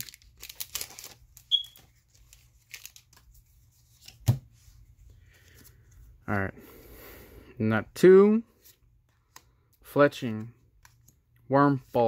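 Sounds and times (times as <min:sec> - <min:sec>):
foil wrapper rustling: 0:00.0 - 0:03.2
trading cards being handled: 0:00.0 - 0:06.2.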